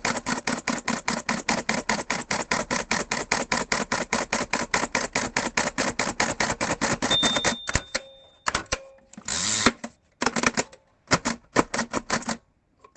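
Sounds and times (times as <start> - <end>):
braille writer keys striking: 7.1 - 9.0
ringing tone: 7.1 - 9.0.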